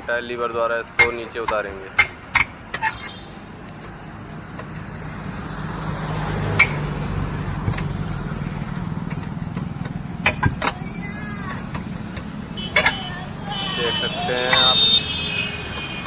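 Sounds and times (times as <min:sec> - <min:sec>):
vehicle engine running: 0:06.6 - 0:16.0.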